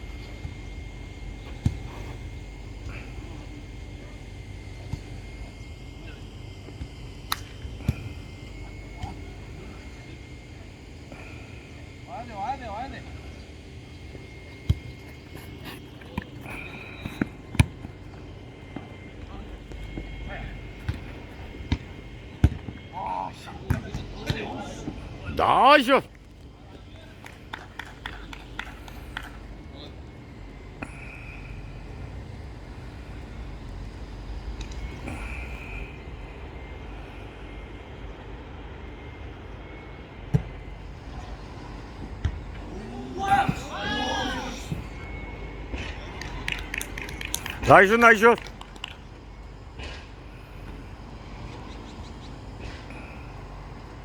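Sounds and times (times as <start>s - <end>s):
low outdoor rumble: 0.0s - 54.0s
steady background noise: 0.0s - 54.0s
football being kicked: 21.7s - 22.7s, 23.7s - 24.4s.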